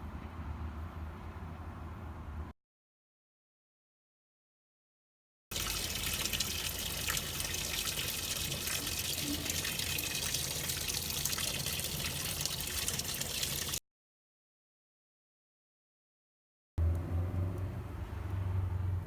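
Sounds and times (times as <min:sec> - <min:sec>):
water running: 0:05.5 - 0:13.8.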